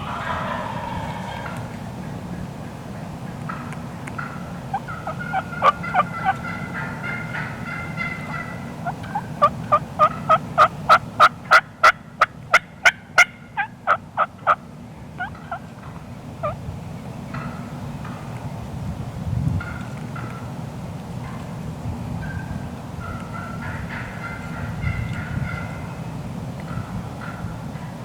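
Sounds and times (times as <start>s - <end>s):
wild turkey yelping: 0.0s - 2.4s, 3.5s - 14.6s, 15.2s - 15.6s.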